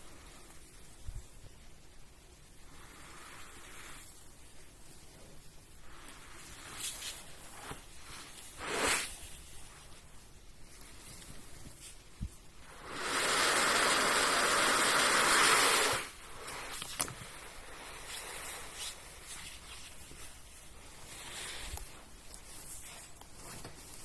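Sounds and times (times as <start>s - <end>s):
soft hiss: 0.0s - 24.0s
loud rush of air: 8.0s - 9.4s, 12.2s - 19.3s.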